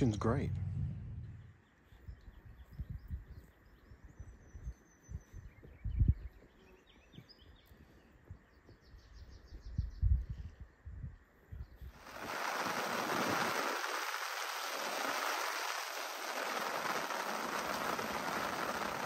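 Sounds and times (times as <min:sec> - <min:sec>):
low thumps: 0:00.0 - 0:01.6
birds chirping: 0:00.0 - 0:10.3.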